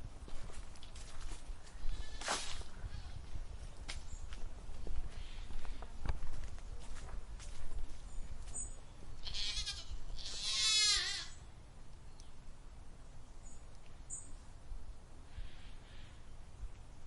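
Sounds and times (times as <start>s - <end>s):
goat bleating: 1.8s - 3.2s, 9.2s - 11.4s.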